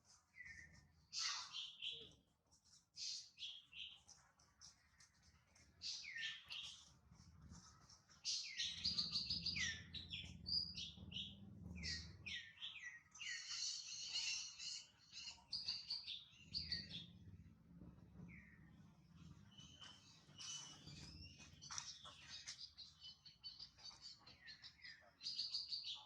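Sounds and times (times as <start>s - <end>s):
low rumbling noise: 8.7s - 12.8s, 16.2s - 22.1s.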